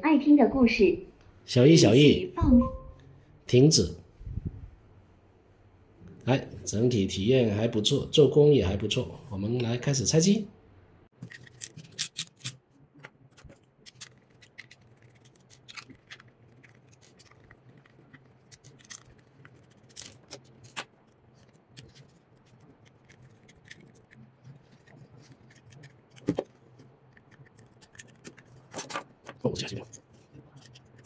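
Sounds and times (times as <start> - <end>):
plastic parts clicking and scraping: 11.2 - 31.0.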